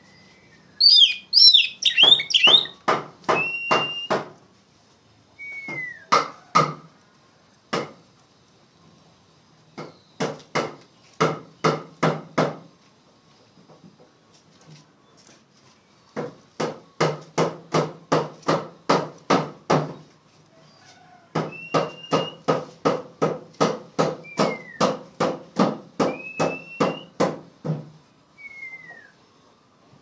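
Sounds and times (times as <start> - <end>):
faint whistled bird notes: 0.0 - 2.8, 3.4 - 4.2, 5.3 - 6.1, 20.6 - 22.4, 24.2 - 24.8, 26.1 - 27.2, 28.4 - 29.4.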